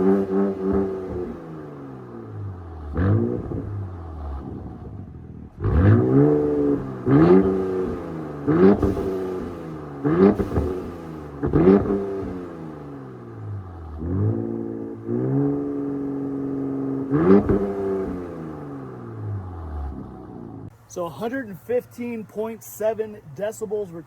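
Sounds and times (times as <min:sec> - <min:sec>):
car engine revving loud exhaust: 0:00.0 - 0:20.7.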